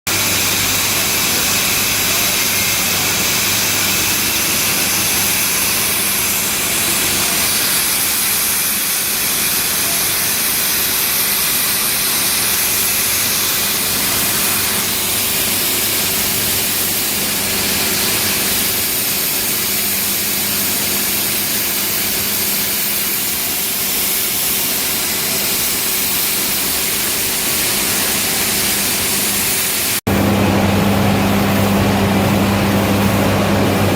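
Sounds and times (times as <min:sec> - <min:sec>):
steam engine hissing: 0:00.1 - 0:33.9.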